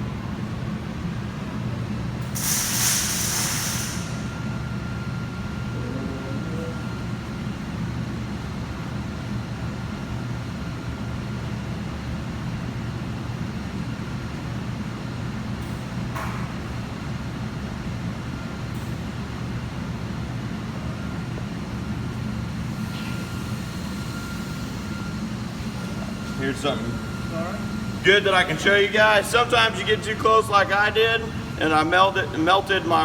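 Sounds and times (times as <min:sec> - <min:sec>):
low machine hum: 0:00.0 - 0:33.0
loud hissing burst: 0:02.4 - 0:04.3.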